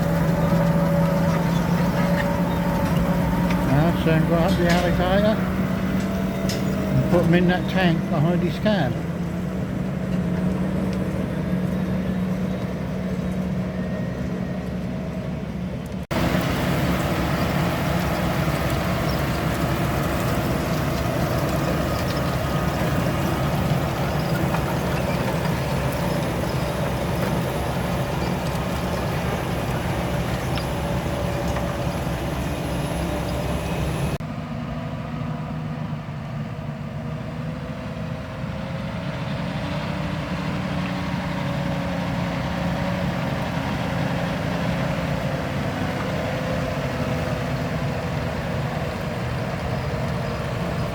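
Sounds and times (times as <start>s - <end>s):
harvester elevators clattering: 0.0s - 15.3s, 16.0s - 34.2s
diesel engine running: 0.0s - 50.9s.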